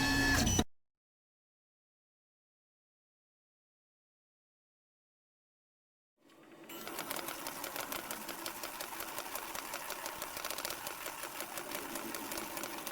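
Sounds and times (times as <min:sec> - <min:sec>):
pen plotter motors whirring: 0:06.7 - 0:12.9.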